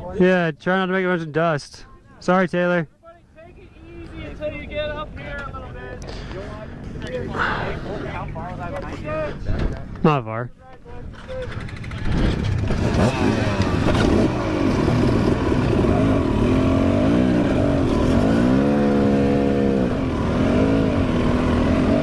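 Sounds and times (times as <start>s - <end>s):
dirt bike engine revving: 11.1s - 22.0s.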